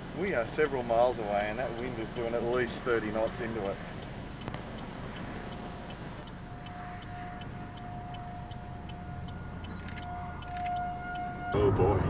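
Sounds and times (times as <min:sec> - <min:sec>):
distant warning siren: 0:00.0 - 0:12.0
faint ticking: 0:00.1 - 0:11.3
low rumble: 0:11.5 - 0:12.0.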